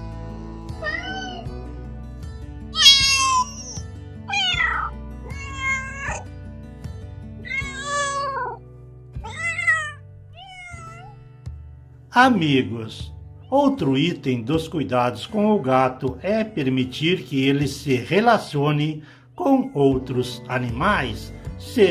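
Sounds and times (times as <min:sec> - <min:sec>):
background music: 0:00.0 - 0:21.9
kitten meowing: 0:00.8 - 0:01.6, 0:02.8 - 0:06.3, 0:07.4 - 0:08.6, 0:09.2 - 0:11.2.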